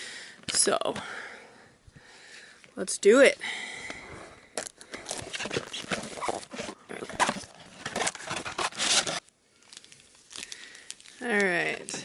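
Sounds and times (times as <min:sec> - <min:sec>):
wrappers ripping and rustling: 0:04.6 - 0:12.0.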